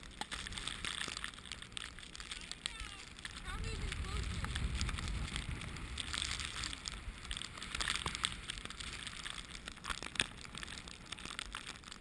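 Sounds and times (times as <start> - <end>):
wind rumble on microphone: 1.6 - 11.5
snow crunching and scraping: 2.3 - 11.2.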